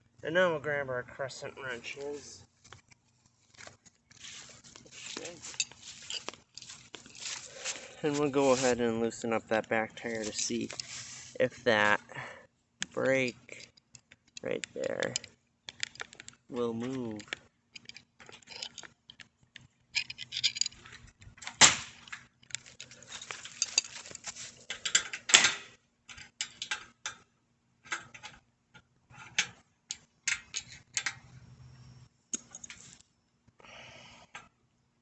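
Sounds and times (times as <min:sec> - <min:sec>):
wrenches clinking and scraping metal: 0:03.6 - 0:11.0, 0:13.0 - 0:19.3, 0:19.9 - 0:21.1, 0:22.1 - 0:27.2, 0:29.1 - 0:31.3.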